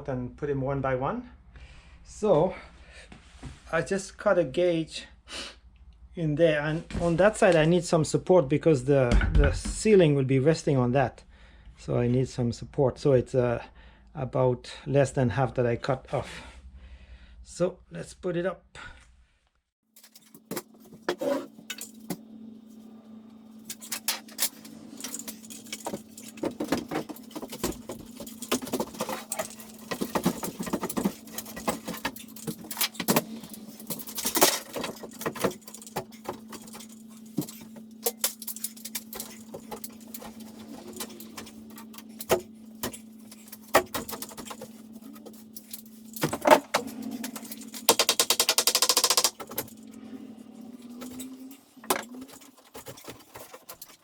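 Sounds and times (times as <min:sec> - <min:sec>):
steady low hum: 0:20.0 - 0:54.0.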